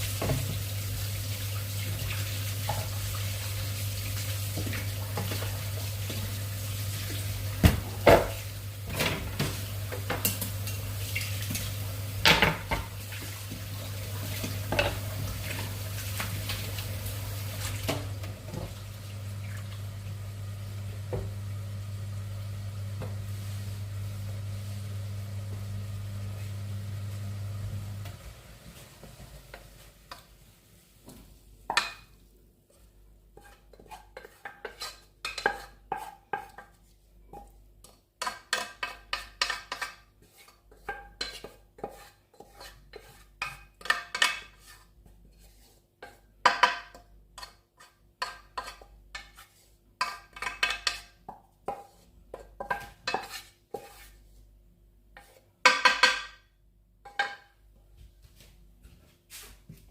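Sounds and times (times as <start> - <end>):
metal utensil scraping a pot: 33.3 - 36.7, 38.2 - 46.2.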